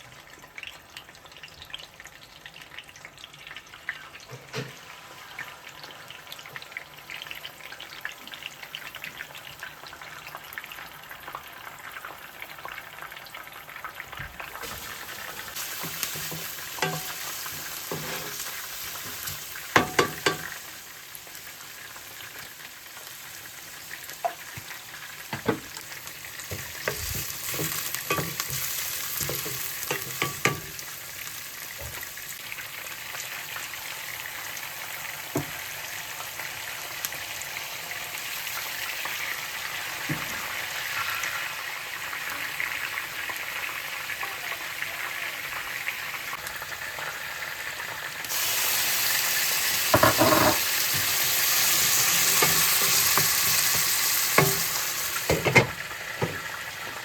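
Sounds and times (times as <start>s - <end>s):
food sizzling in frying pan: 0.0s - 57.0s
utensil scraping pan: 15.8s - 20.5s, 49.9s - 56.4s.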